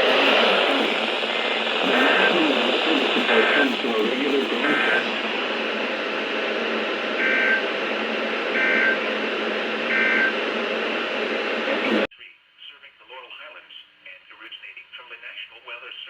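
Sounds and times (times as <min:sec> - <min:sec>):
radio static: 0:00.0 - 0:12.1.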